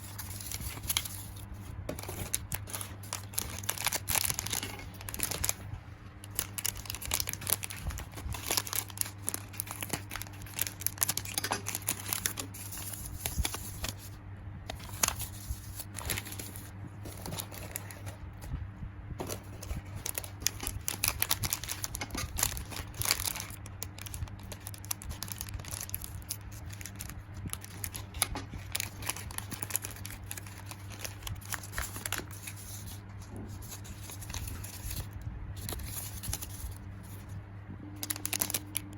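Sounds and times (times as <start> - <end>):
plastic packaging crinkling: 0.0 - 18.2, 19.2 - 37.3, 38.0 - 38.9.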